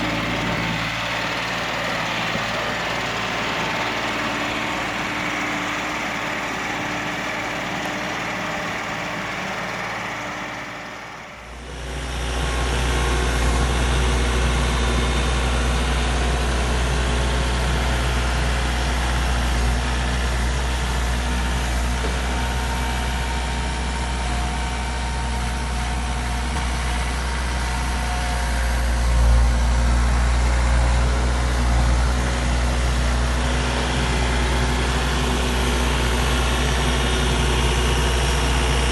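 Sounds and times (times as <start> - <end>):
deep engine hum: 0.0 - 38.9
engine running: 0.0 - 38.9.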